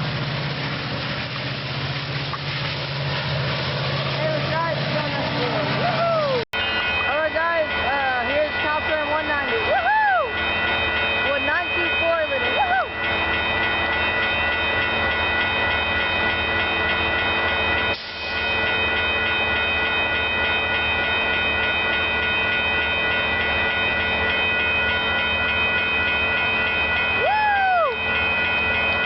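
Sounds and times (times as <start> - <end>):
train passing: 0.0 - 29.0
steady high tones: 3.3 - 29.0
person whooping: 5.8 - 6.4, 9.7 - 10.4, 12.6 - 12.9, 27.2 - 28.0.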